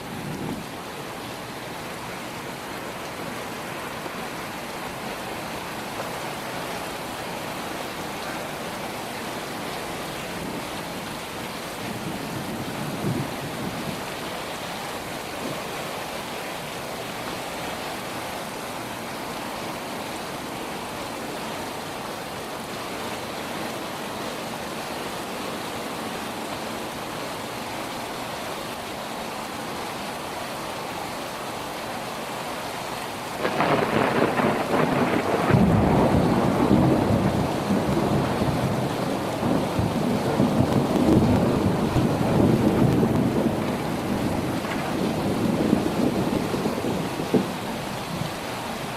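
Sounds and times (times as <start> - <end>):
steady rain falling: 0.0 - 48.9
low rumble of thunder: 11.8 - 14.1, 33.4 - 48.4.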